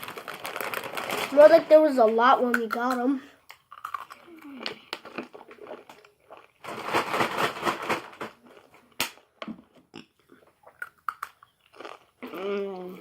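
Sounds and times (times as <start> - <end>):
chip bag crinkling: 0.0 - 3.0, 5.0 - 8.8.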